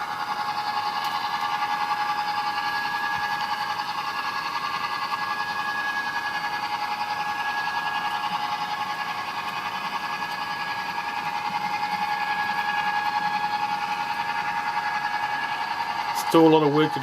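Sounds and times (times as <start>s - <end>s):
model train whining on track: 0.0s - 17.0s.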